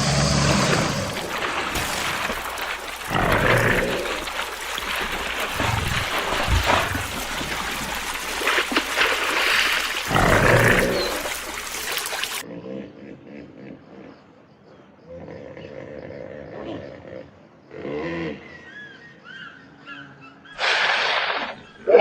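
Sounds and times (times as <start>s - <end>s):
large wild animal calling loudly: 20.5s - 22.0s.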